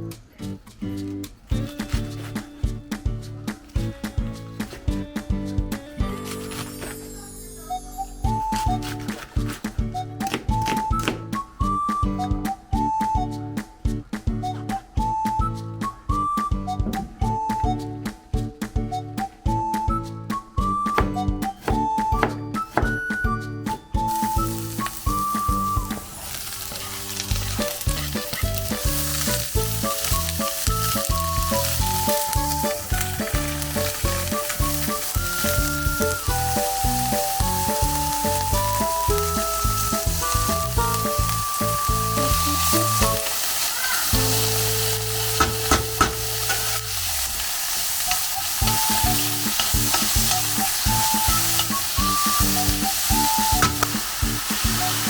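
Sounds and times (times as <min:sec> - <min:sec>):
background music simple melody: 0:00.0 - 0:55.0
food sizzling in a frying pan: 0:24.1 - 0:55.0
stirring scrapes and clicks: 0:26.3 - 0:36.4.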